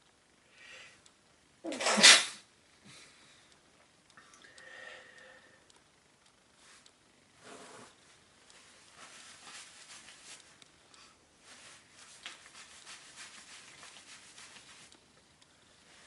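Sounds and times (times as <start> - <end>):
faint rubbing and scratching: 6.6 - 14.9.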